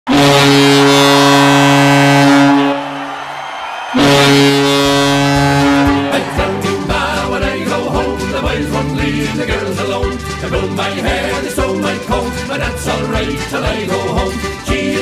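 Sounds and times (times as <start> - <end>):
goal horn blasts: 0.1 - 3.1, 4.0 - 7.8
music with drum beats: 4.8 - 15.0.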